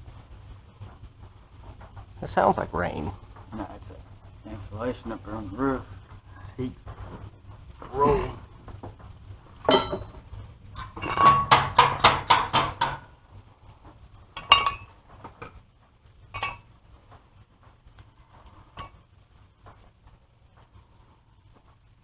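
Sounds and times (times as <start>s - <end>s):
tools clinking on metal: 9.7s - 10.2s, 10.8s - 13.0s, 14.4s - 14.9s, 16.4s - 16.6s.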